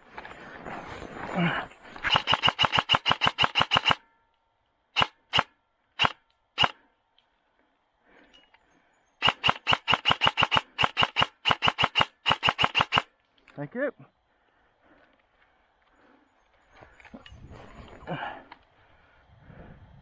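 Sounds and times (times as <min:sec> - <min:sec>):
airsoft rifle firing: 0:02.1 - 0:04.0, 0:05.0 - 0:06.8, 0:09.2 - 0:13.1.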